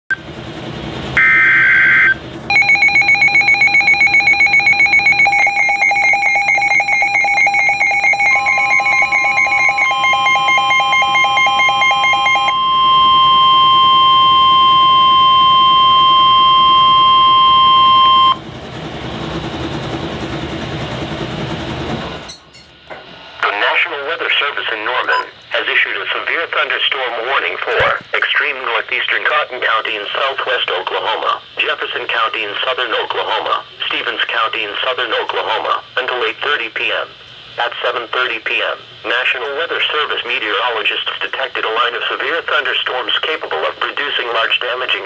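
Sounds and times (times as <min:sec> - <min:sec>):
steady warning tone: 0:01.1 - 0:18.5, 0:25.0 - 0:25.3
rapid pulsing alarm beep: 0:01.2 - 0:18.4
faint radio hiss: 0:23.4 - 0:45.0.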